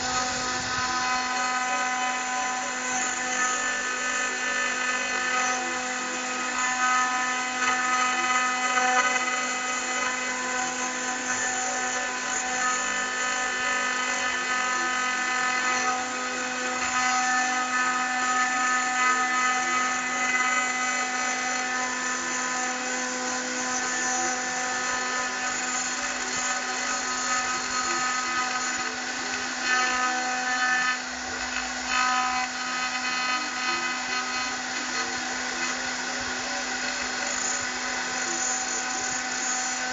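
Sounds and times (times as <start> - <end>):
cnc spindle whining: 0.0 - 39.9.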